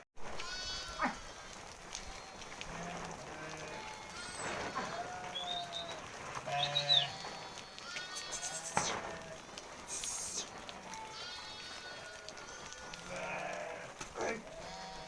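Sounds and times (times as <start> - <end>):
sheep and goats bleating: 0.3 - 15.0.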